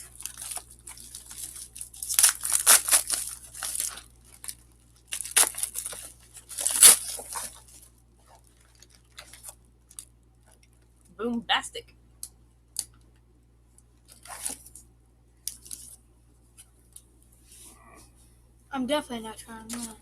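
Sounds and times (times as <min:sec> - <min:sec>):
snack packaging crinkling: 0:00.0 - 0:10.8, 0:14.1 - 0:14.8.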